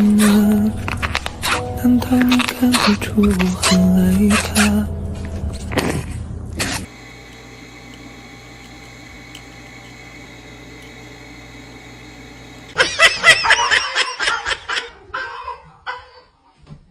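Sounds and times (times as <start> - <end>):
high-pitched laughter: 12.8 - 16.4.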